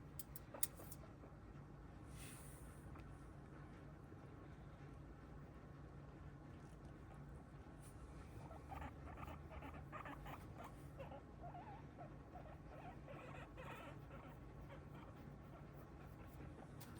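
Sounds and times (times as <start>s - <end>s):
guinea pig squeaking: 0.2s - 1.0s, 8.3s - 16.9s.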